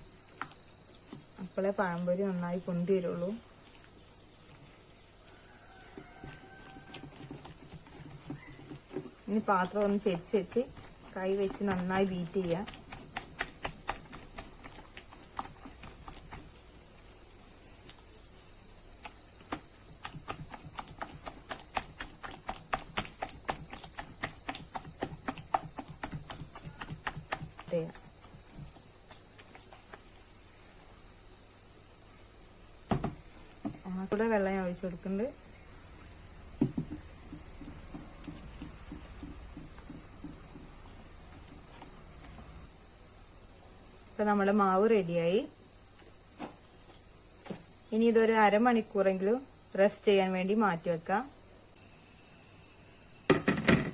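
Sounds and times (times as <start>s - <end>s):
hand beating wet batter: 5.7s - 16.6s, 18.9s - 30.2s, 36.5s - 42.7s.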